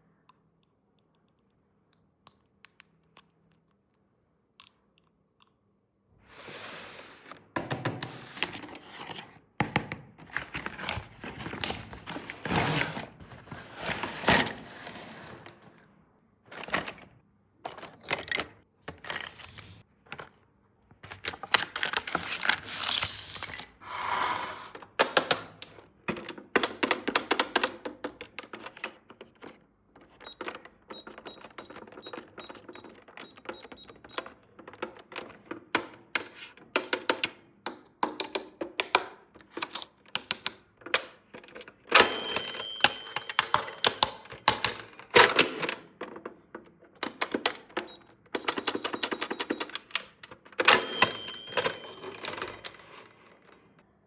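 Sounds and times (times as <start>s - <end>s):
crinkly packaging rustling: 10.3s - 15.6s, 21.0s - 23.7s
toys clicking and knocking: 42.0s - 45.8s.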